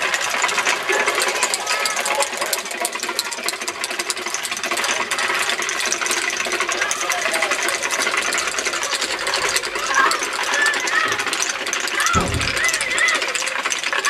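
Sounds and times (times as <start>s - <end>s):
wooden rattles clattering rapidly: 0.0s - 14.0s.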